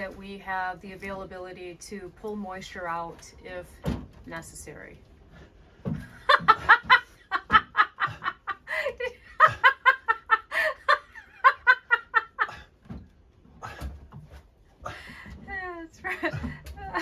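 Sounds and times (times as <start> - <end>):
woman laughing hard: 6.2 - 12.7, 16.0 - 17.0.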